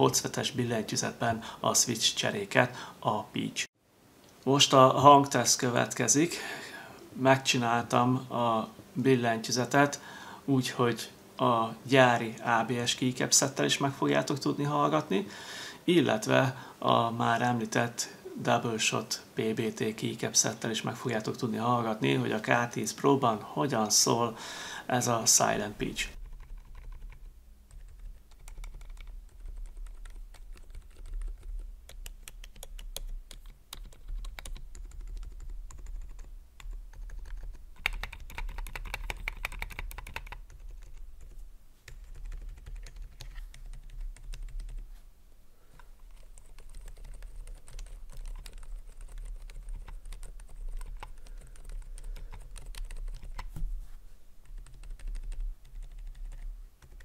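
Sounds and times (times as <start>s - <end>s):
mechanical keyboard typing: 26.1s - 41.3s, 41.9s - 44.8s, 46.0s - 53.5s, 54.4s - 57.0s.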